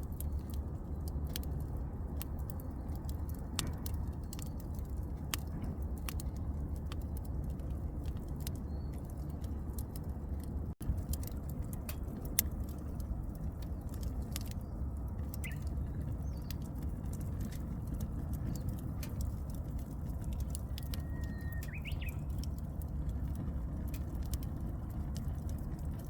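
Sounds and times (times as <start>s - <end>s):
low steady rumble: 0.0s - 26.0s
wood fire crackling and popping: 0.0s - 26.0s
bird singing whistle: 20.9s - 22.3s.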